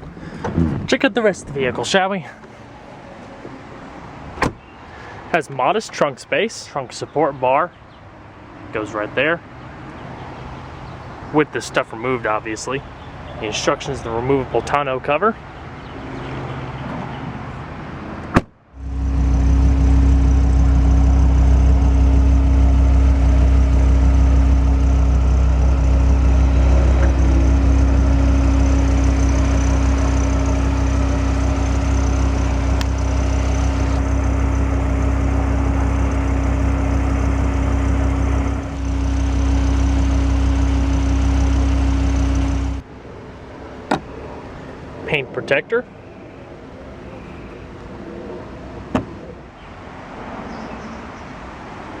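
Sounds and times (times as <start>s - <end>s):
car engine idling: 0.0s - 0.8s, 18.7s - 43.0s.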